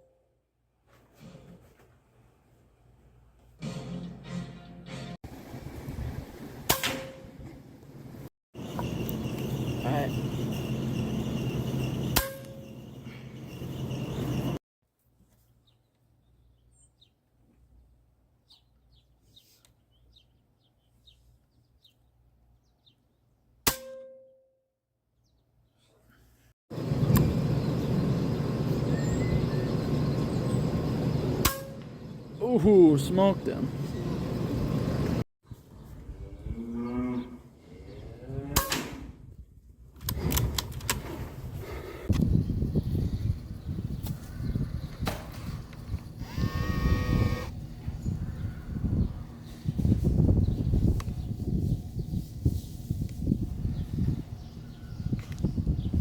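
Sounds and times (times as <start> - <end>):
sharp crack: 6.7 - 7.2
cow mooing: 46.3 - 47.5.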